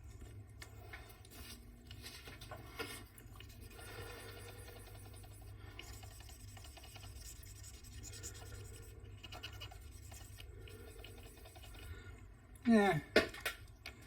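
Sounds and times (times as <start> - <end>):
scrubbing circuit board: 3.4 - 11.9.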